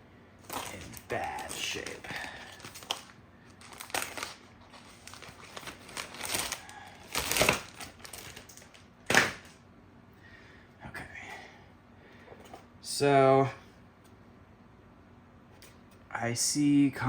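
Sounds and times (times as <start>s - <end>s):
plastic bag crinkling: 0.4s - 9.6s.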